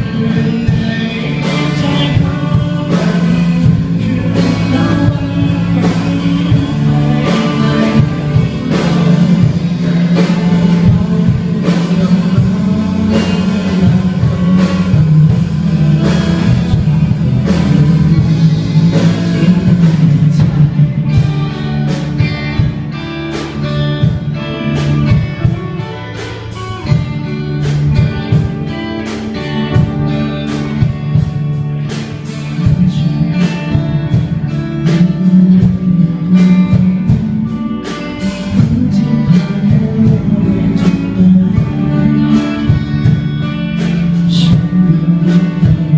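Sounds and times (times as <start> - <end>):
plucked guitar notes: 0.0 - 45.9
steady bass: 0.0 - 45.9.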